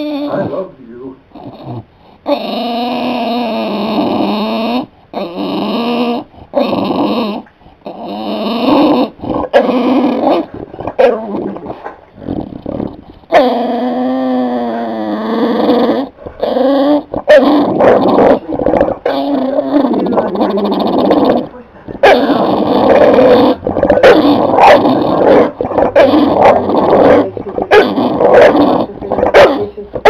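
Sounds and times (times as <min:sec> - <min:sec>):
dog whine-growl calls: 0:00.0 - 0:00.6, 0:01.3 - 0:29.7.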